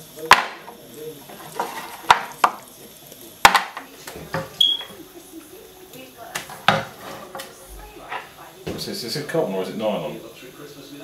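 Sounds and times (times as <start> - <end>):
hard objects knocking: 3.4 - 4.6, 6.4 - 7.4.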